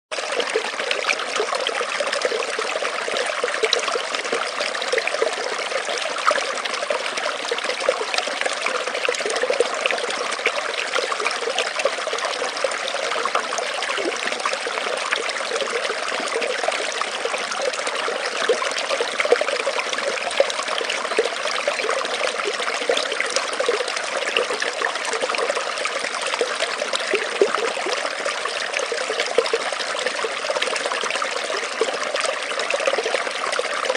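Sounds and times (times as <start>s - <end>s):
forest stream trickling: 0.1s - 33.9s.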